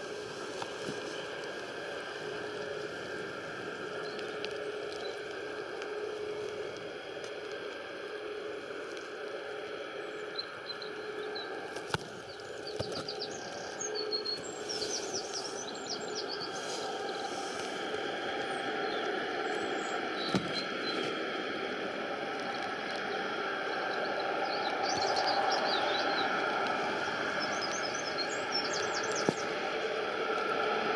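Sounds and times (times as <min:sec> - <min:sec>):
distant jet engines hum: 0:00.0 - 0:30.9
small birds chirping: 0:10.0 - 0:21.3, 0:22.4 - 0:30.0.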